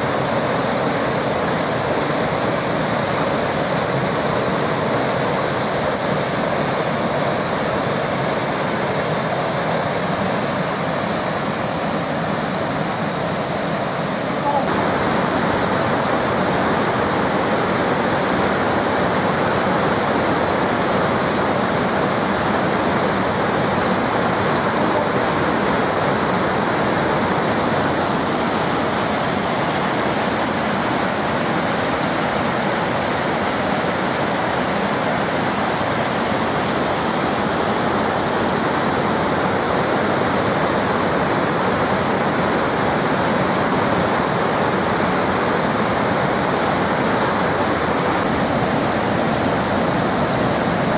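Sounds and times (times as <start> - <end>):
waterfall pouring: 47.1 - 50.9.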